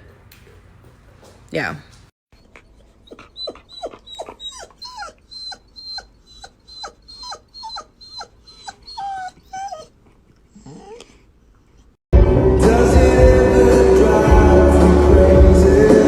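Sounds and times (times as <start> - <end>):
dog whining: 2.4 - 12.0.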